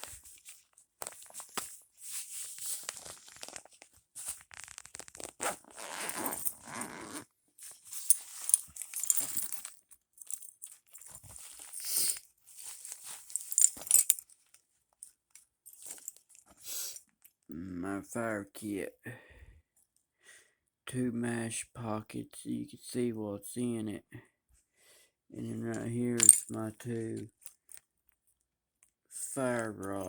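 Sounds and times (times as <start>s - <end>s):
pouch rustling and crinkling: 0.0s - 14.2s, 15.7s - 16.6s.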